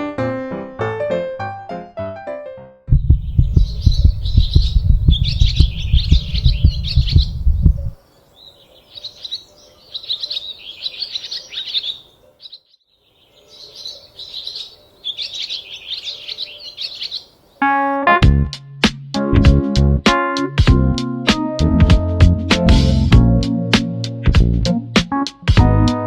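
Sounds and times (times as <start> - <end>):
loud low rumble: 2.9 - 8.0
small birds chirping: 2.9 - 17.7.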